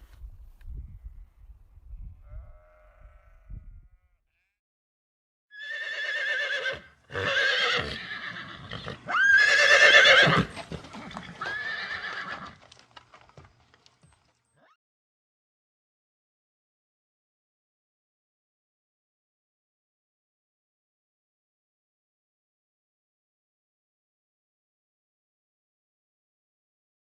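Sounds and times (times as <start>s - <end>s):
farm animal calling: 2.2s - 4.5s.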